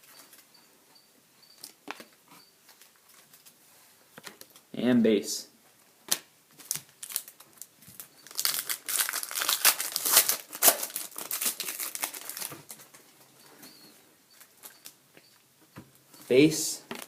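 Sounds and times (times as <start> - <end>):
card pack wrapper crinkling: 6.1 - 12.8.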